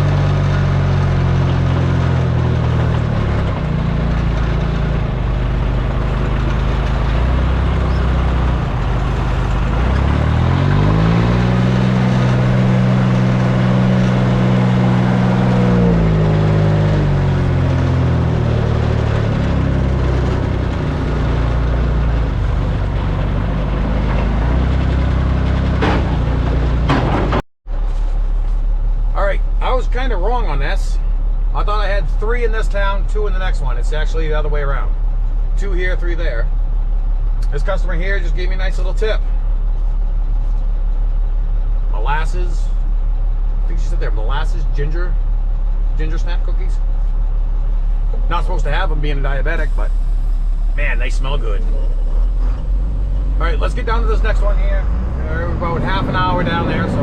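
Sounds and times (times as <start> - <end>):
engine running and revving: 0.0 - 28.6, 41.9 - 57.0.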